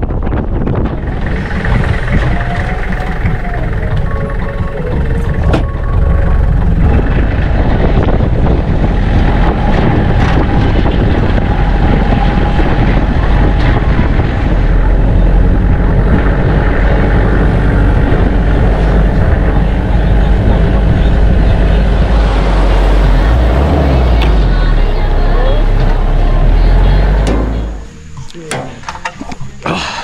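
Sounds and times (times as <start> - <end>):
wind buffeting microphone: 0.0 - 28.2
vehicle rumble: 0.0 - 30.0.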